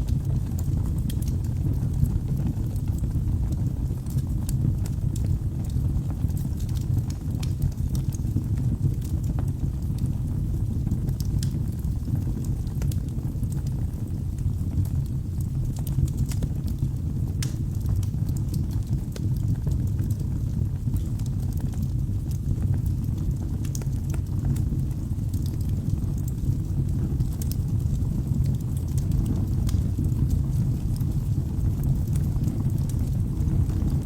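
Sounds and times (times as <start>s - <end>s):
fire rumbling: 0.0s - 34.0s
logs crackling and popping: 0.1s - 34.0s.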